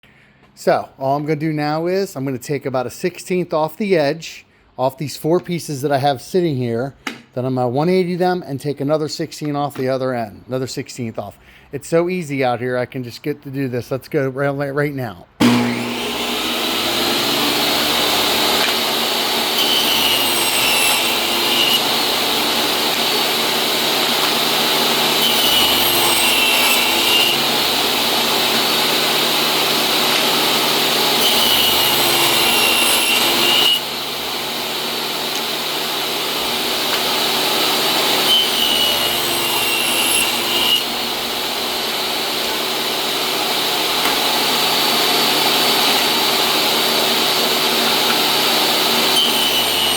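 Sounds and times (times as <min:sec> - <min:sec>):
saw blade cutting wood: 0:15.4 - 0:49.9
table saw motor whine: 0:15.4 - 0:49.9.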